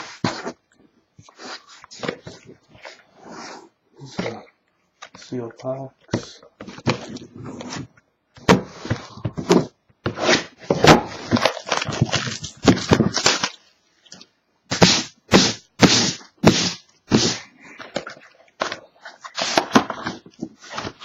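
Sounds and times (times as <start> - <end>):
cardboard packaging handled: 9.4 - 13.6
plastic wrap tearing: 11.3 - 13.6.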